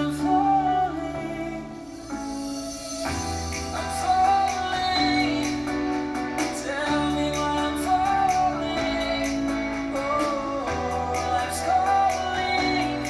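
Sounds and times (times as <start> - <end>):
song with singing and bass: 0.0 - 13.0.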